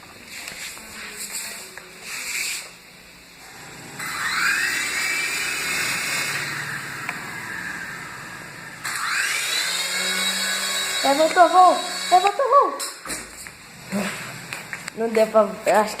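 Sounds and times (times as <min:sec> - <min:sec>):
toy helicopter rotor whine: 0:03.4 - 0:12.7.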